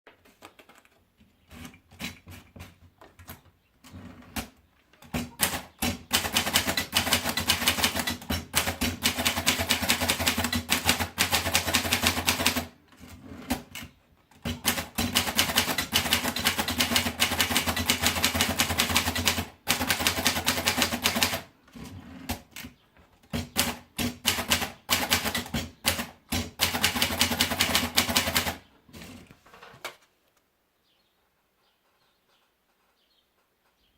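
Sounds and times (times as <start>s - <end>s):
typewriter keystrokes: 5.2s - 12.7s, 14.5s - 21.4s, 23.4s - 28.6s.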